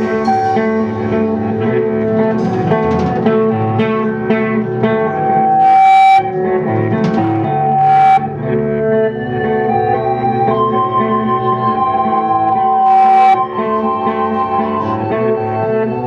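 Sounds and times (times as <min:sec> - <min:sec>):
drum kit: 0:00.0 - 0:08.3
bass guitar: 0:00.0 - 0:16.0
electric guitar: 0:00.0 - 0:16.0.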